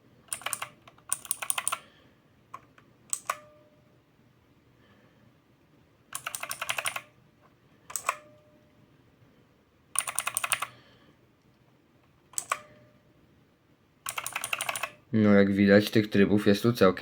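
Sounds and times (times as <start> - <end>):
clicky mechanical keyboard typing: 0.3 - 1.8, 2.5 - 3.4, 6.1 - 7.1, 7.9 - 8.3, 10.0 - 10.7, 12.3 - 12.8, 14.0 - 15.0.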